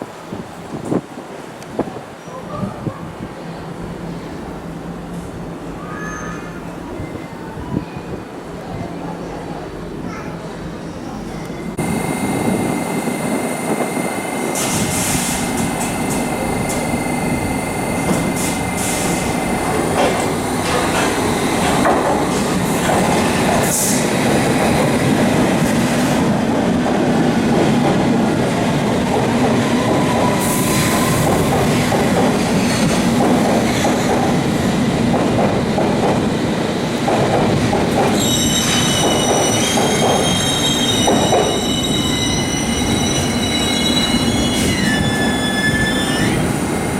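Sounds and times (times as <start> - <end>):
passenger train running past: 0.0 - 46.9
high-pitched wheel squeal: 38.2 - 46.4.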